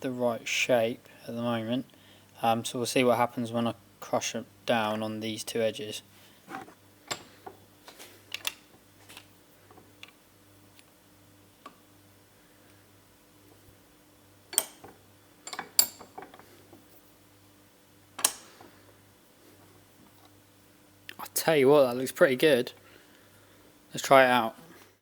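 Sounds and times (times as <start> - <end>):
faint electrical hum: 0.0 - 25.0
hand tools clicking and knocking: 7.1 - 8.6, 14.5 - 16.8, 18.2 - 18.7.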